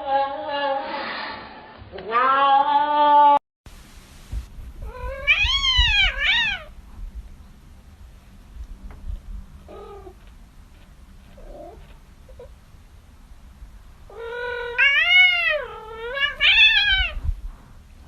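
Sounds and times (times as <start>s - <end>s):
cat meowing: 4.8s - 6.7s, 14.1s - 17.2s.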